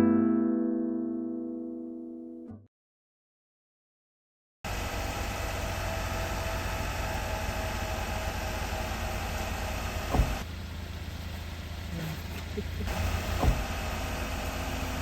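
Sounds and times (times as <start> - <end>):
car engine idling: 4.7 - 15.0
thump: 10.1 - 10.5, 13.3 - 13.7.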